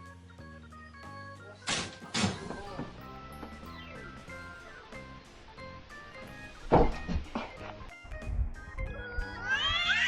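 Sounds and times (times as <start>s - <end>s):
background music: 0.0s - 10.0s
cat meowing: 9.1s - 10.0s.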